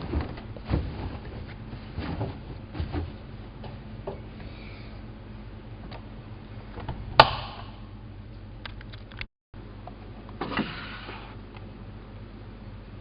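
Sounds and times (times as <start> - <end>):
rustling clatter: 0.0 - 4.2.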